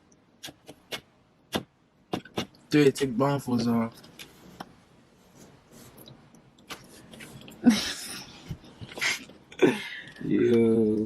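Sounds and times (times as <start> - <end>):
soft rustling: 3.6 - 9.3
breathy outbursts: 7.6 - 10.3.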